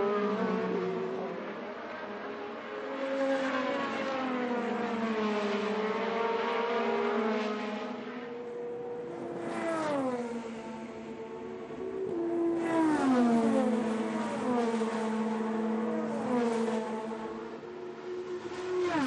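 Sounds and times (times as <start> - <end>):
race car engines at high revs: 0.0 - 19.0.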